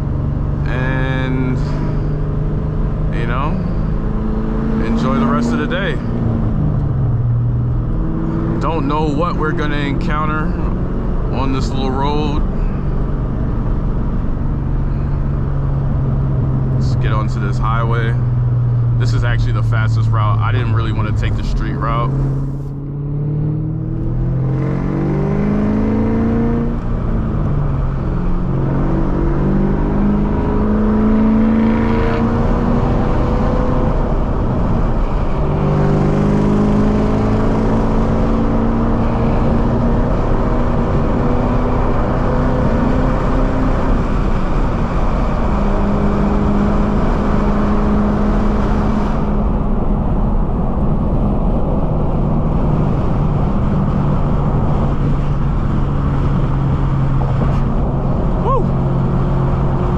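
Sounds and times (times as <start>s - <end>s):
car engine accelerating: 0.0s - 59.9s.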